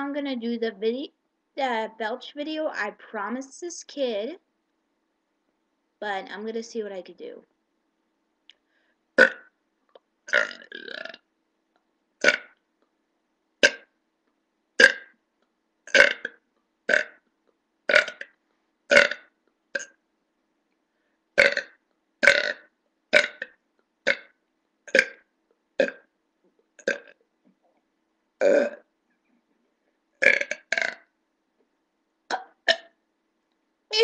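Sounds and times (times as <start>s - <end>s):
person belching: 9.2s - 9.5s, 10.3s - 11.2s, 12.2s - 12.5s, 13.6s - 13.8s, 14.8s - 15.1s, 15.9s - 17.2s, 17.9s - 18.3s, 18.9s - 19.9s, 21.4s - 22.6s, 23.2s - 23.5s, 24.1s - 24.3s, 24.9s - 25.2s, 25.8s - 26.1s, 26.8s - 27.2s, 28.4s - 28.8s, 30.2s - 31.0s.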